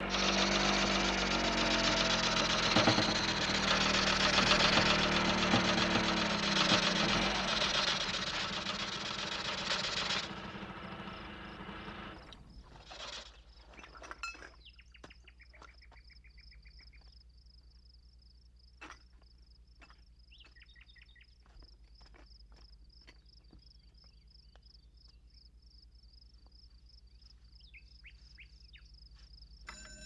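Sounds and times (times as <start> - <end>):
insects chirping: 10.9 - 29.7.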